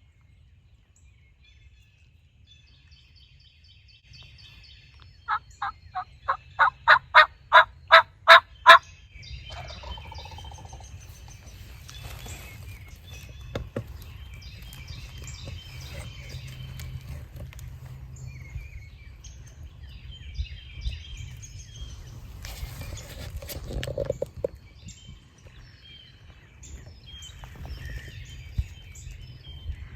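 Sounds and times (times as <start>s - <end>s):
songbirds chirping: 0.0s - 29.9s
turkey yelps: 5.3s - 8.8s.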